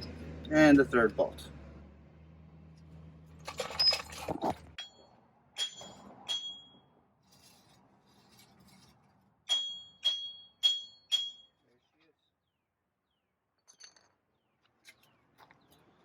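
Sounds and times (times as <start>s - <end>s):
ringing metal clinks: 4.8s - 6.8s, 9.5s - 11.6s.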